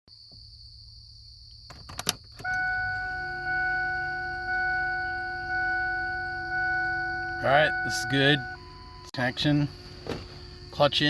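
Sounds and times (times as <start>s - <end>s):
ignition key clicks: 1.7s - 8.6s
dashboard warning chime: 2.4s - 9.2s.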